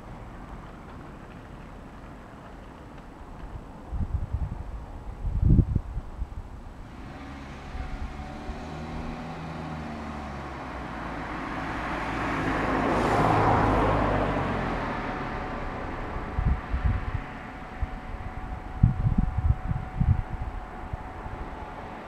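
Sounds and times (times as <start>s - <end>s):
vehicle driving past: 6.8s - 22.0s.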